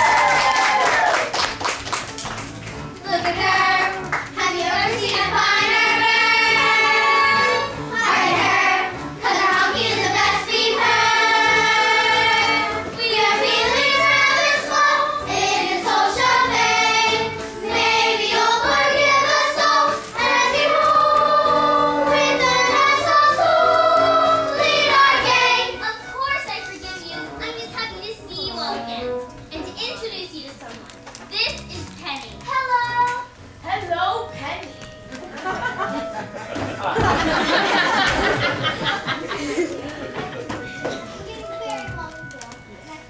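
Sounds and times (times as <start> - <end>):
musical accompaniment: 0.0 - 43.0
children singing: 3.1 - 25.8.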